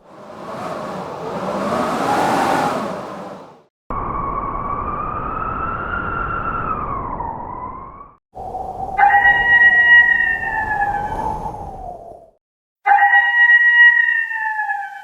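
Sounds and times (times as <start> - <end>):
blizzard wind gust: 0.0 - 5.0, 6.0 - 12.4
wolf howling: 8.8 - 12.0.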